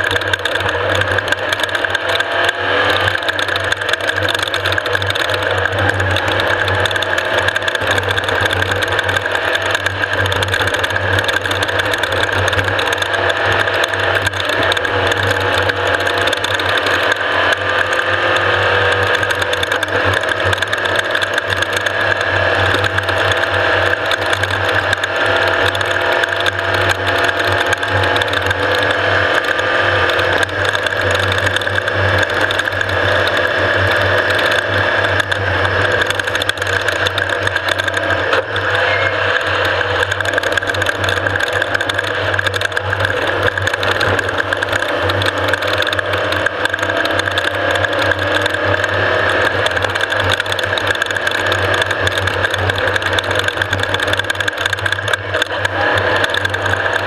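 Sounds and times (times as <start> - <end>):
engine running hard: 0.0 - 57.0
mechanical rattling and clatter: 0.0 - 57.0.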